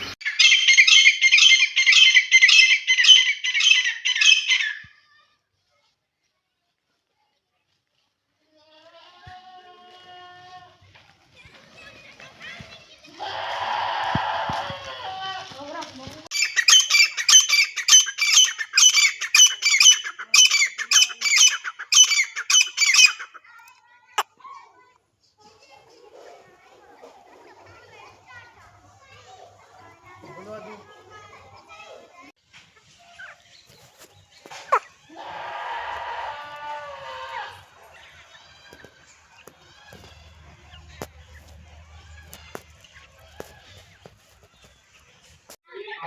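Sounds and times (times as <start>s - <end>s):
bird repeated loud calls: 0.0s - 4.8s, 16.3s - 23.5s, 34.5s - 41.5s
francolin calling: 16.3s - 23.4s.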